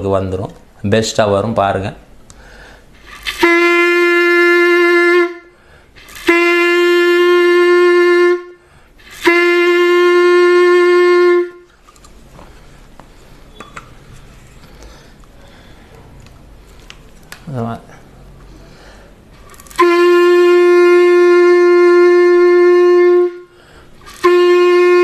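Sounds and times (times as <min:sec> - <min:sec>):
breath: 0:02.3 - 0:03.0, 0:05.5 - 0:06.0, 0:08.6 - 0:09.0, 0:14.6 - 0:16.8, 0:18.4 - 0:19.2, 0:23.5 - 0:24.0
clarinet held notes: 0:03.2 - 0:05.5, 0:06.2 - 0:11.7, 0:19.7 - 0:23.5, 0:24.1 - 0:25.0.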